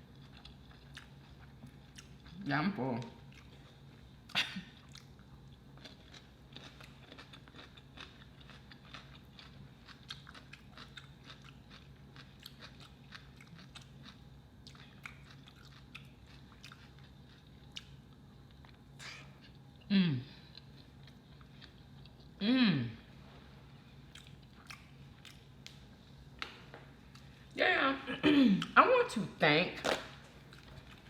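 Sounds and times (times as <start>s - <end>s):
close-miked chewing food: 0.0s - 2.4s, 3.2s - 4.1s, 4.7s - 22.4s, 24.0s - 25.8s.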